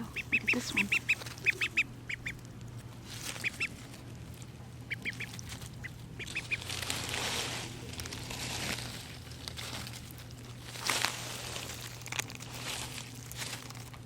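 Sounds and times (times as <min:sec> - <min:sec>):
duckling peeping: 0:00.0 - 0:09.3
rustling scratching noise: 0:00.0 - 0:14.0.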